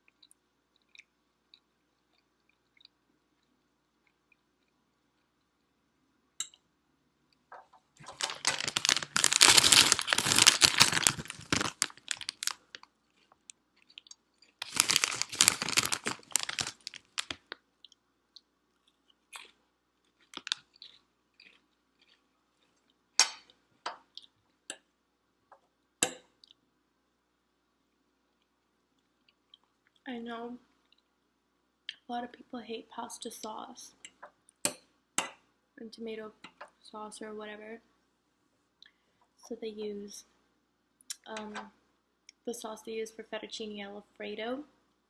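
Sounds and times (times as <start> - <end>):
potato chips crunching: 8.0 - 18.0, 18.8 - 23.5.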